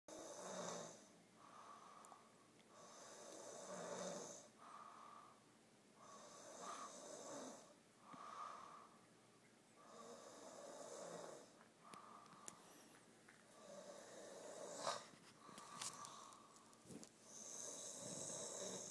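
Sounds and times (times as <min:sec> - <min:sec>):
person snoring: 0:00.1 - 0:02.1, 0:02.8 - 0:04.5, 0:06.0 - 0:08.9, 0:09.8 - 0:11.5, 0:13.6 - 0:16.4, 0:17.2 - 0:18.9.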